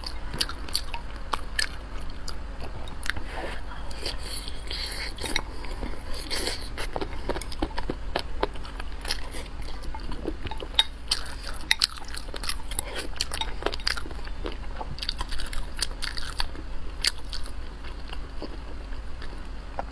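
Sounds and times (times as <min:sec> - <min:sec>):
person chewing crunchy food: 0:00.0 - 0:19.9.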